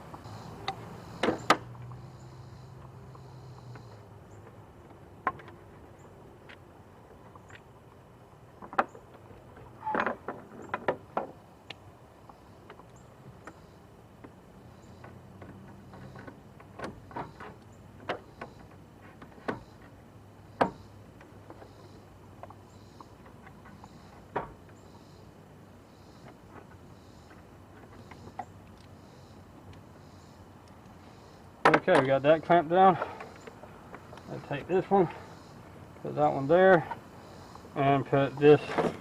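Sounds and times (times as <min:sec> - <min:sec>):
clicks and knocks of engine work: 0:12.3 - 0:25.0.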